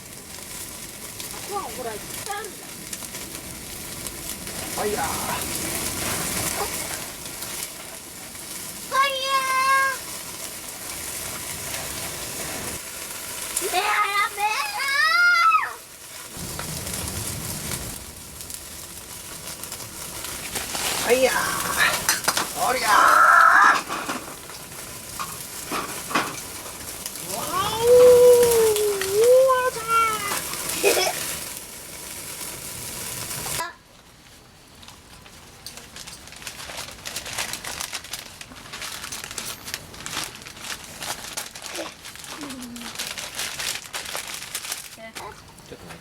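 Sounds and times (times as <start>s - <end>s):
crinkling and rustling: 0.0s - 33.6s, 34.2s - 46.0s
food frying sizzle: 0.0s - 46.0s
person calling out: 21.0s - 23.8s, 27.2s - 30.4s.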